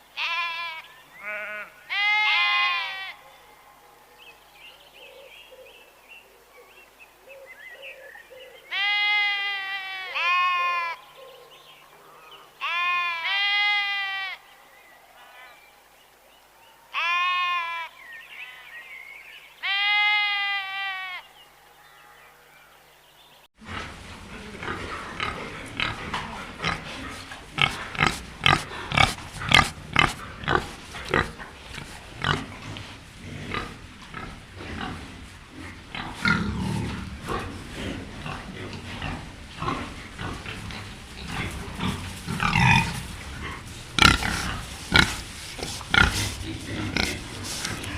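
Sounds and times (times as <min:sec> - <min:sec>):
animal bleating: 0:00.2 - 0:03.2, 0:08.7 - 0:11.0, 0:12.6 - 0:14.4, 0:17.0 - 0:18.7, 0:19.6 - 0:21.2
animal grunting harshly: 0:23.6 - 0:47.9.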